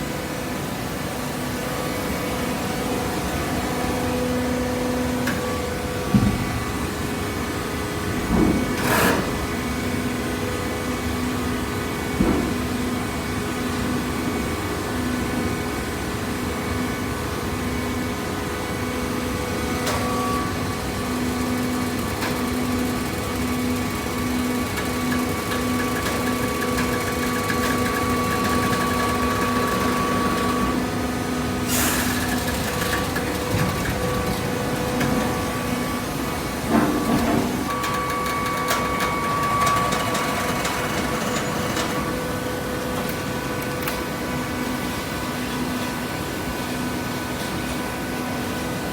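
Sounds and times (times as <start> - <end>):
baler machine hum: 17.6 - 45.4.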